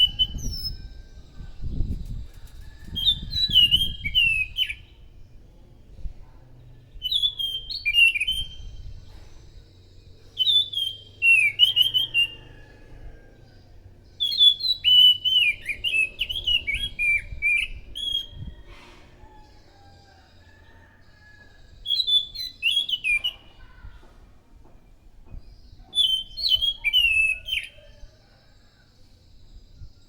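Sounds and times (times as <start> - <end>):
thrush singing whistled notes: 2.8 - 5.1, 7.0 - 9.1, 9.8 - 12.8, 14.2 - 18.9, 21.9 - 23.5, 26.0 - 28.0.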